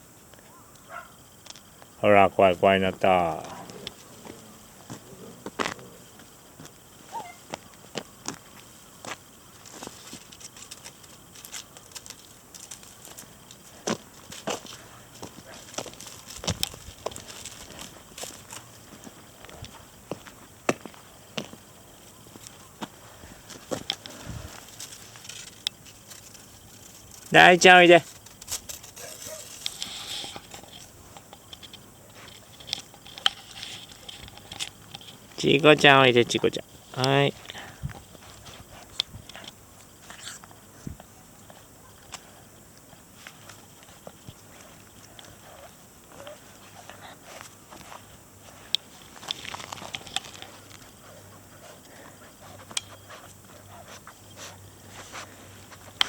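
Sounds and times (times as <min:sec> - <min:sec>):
puppies nibbling and scuffling: 0:02.8 - 0:56.0
light clicks and scrapes: 0:28.0 - 0:35.4, 0:43.2 - 0:56.0.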